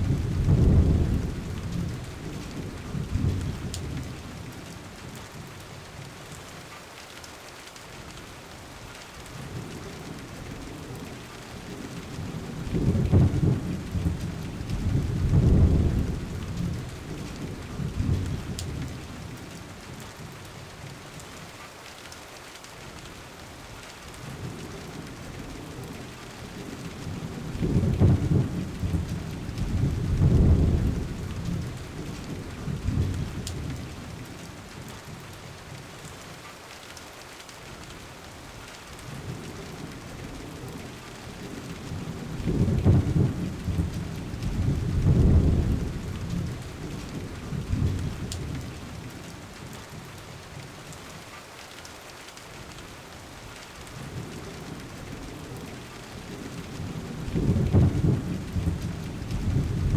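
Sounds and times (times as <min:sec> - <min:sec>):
low rolls of thunder: 0:00.0 - 0:05.4, 0:09.3 - 0:20.3, 0:24.2 - 0:35.8, 0:39.0 - 0:50.2, 0:54.0 - 0:59.9
steady rain falling: 0:00.0 - 0:59.9.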